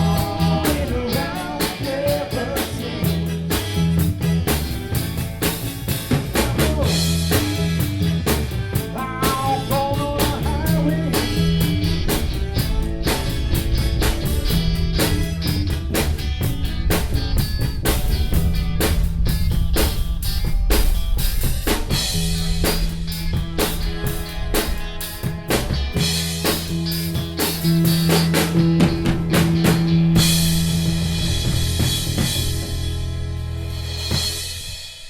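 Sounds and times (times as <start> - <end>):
bass drum and snare beat: 0.0 - 34.8
rock band playing: 0.0 - 35.0
cymbals crashing: 11.1 - 28.3.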